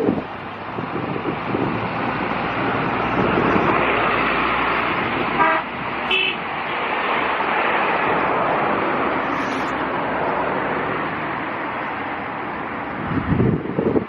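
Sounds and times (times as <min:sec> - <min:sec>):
steady rushing noise: 0:00.0 - 0:14.0
car horn toot: 0:05.4 - 0:06.4.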